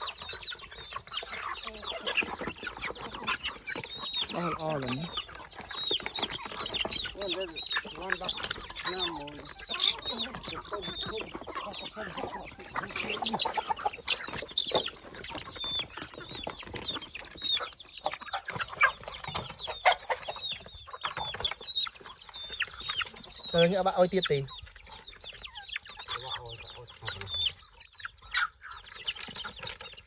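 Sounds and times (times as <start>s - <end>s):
chickens clucking: 0.0s - 30.0s.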